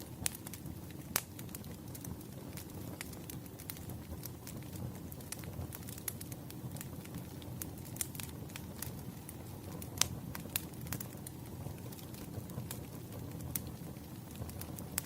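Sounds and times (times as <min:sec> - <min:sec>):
fire popping and snapping: 0:00.0 - 0:15.0
low rumble of fire: 0:00.0 - 0:15.0.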